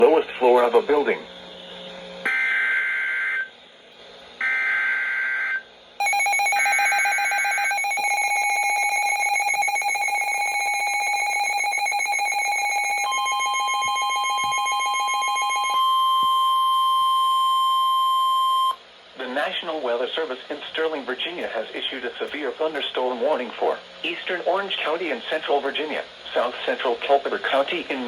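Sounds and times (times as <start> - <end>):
pure steady tone: 5.5 - 18.8
piercing attention tone: 6.0 - 18.8.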